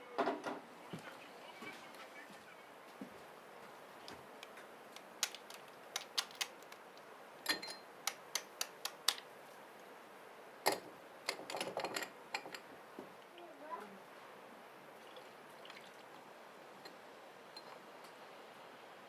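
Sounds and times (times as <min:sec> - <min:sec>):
faint steady background noise: 0:00.0 - 0:19.0
sharp clicks and snaps: 0:04.4 - 0:07.1, 0:08.0 - 0:09.9.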